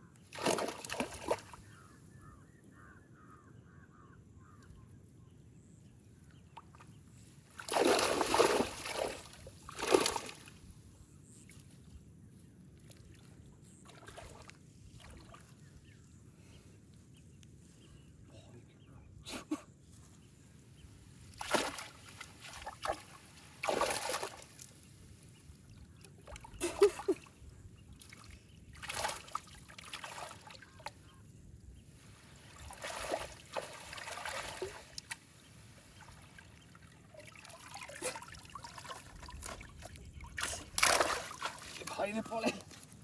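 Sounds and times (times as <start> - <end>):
water splashing and dribbling: 0.3 - 1.6, 7.6 - 10.6, 12.9 - 15.6, 21.4 - 24.8, 27.9 - 31.0, 32.2 - 43.0.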